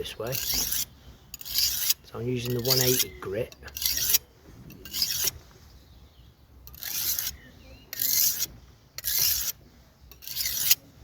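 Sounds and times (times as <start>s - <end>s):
blade rasping on sharpening stone: 0.3s - 4.2s, 4.8s - 5.4s, 6.7s - 10.8s.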